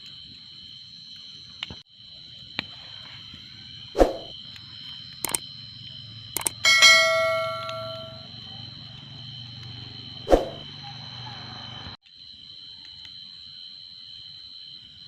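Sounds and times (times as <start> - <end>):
insects chirring: 0.0 - 15.0
sharp clicks: 5.2 - 5.4, 6.4 - 6.6
metallic clang: 6.4 - 8.2.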